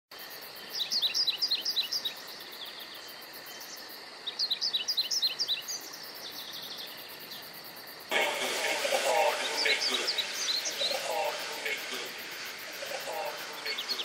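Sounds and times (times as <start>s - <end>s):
high insect hiss: 0.2s - 14.0s
songbird singing high notes: 9.3s - 14.0s.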